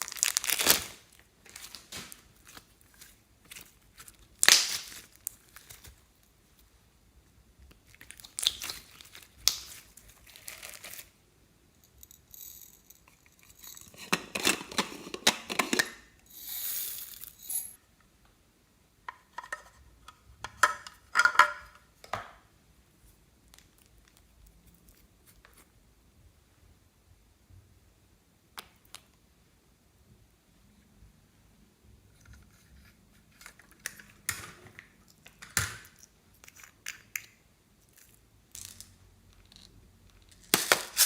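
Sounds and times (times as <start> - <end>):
plastic rustling and crinkling: 0.0 - 6.7, 7.7 - 11.2.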